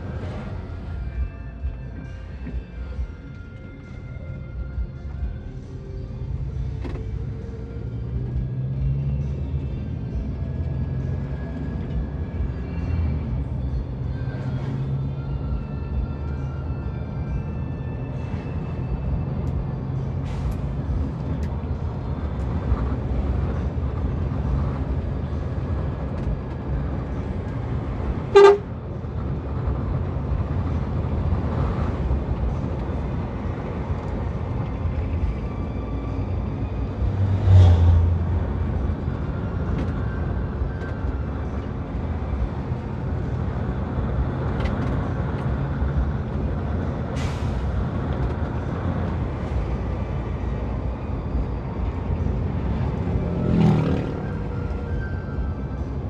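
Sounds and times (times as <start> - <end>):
coach engine and road rumble: 0.0 - 56.0
short sharp horn toot: 28.3 - 28.7.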